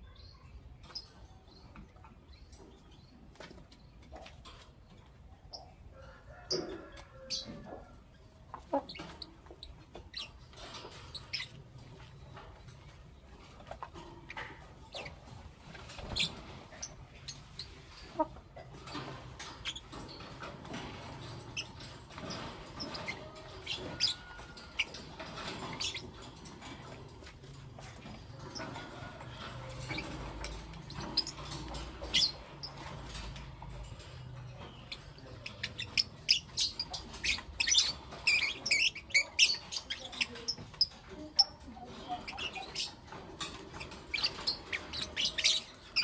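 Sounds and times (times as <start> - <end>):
lovebirds squeaky chirps: 8.6 - 12.3, 14.3 - 46.0.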